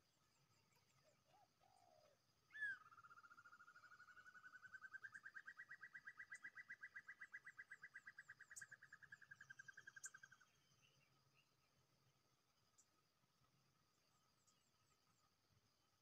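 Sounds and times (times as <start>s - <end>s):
distant bird trill: 2.5s - 10.8s.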